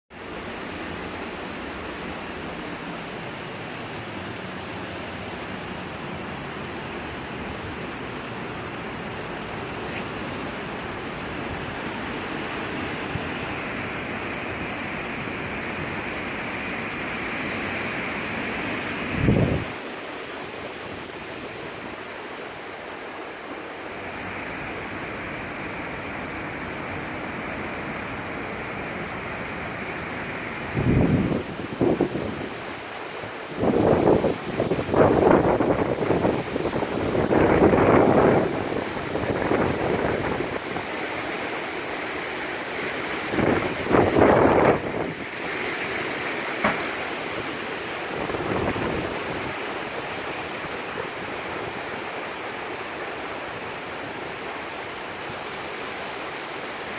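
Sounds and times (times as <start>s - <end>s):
strong wind and rain rushing: 0.1s - 56.9s
wind gust thumping microphone: 43.2s - 45.6s, 48.1s - 49.6s.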